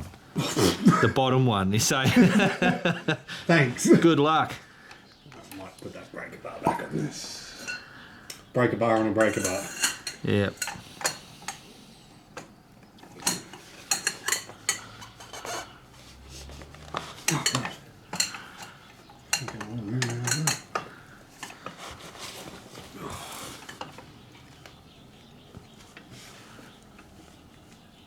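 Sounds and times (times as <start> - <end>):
metal hand tools clinking: 7.6 - 11.6, 12.4 - 22.0.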